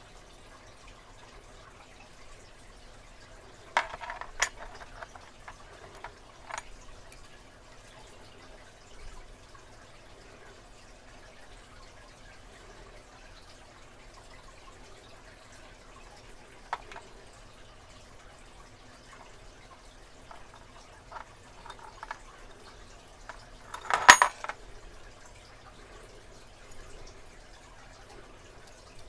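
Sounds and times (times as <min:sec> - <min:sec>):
metallic ring: 0:03.8 - 0:06.6, 0:20.3 - 0:22.2, 0:23.7 - 0:24.6
metal lock parts clicking: 0:03.8 - 0:07.2, 0:16.8 - 0:17.1, 0:20.3 - 0:22.2, 0:23.3 - 0:24.6.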